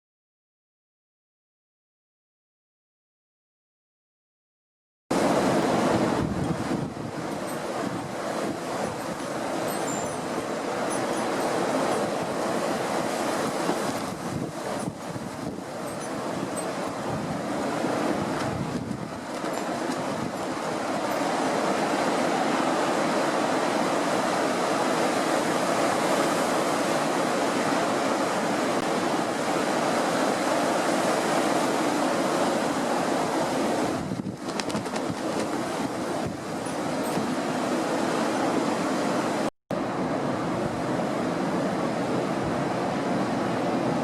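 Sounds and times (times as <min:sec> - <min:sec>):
lake waves: 0:05.1 - 0:44.0
strong wind: 0:05.1 - 0:44.0
wind buffeting microphone: 0:05.2 - 0:39.4.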